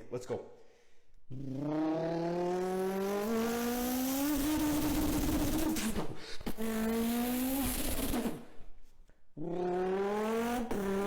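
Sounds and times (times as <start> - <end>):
person imitating car engine: 1.3 - 2.8, 9.4 - 11.0.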